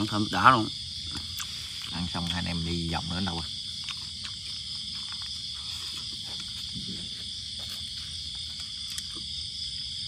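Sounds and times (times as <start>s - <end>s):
night insects trilling: 0.0s - 10.0s.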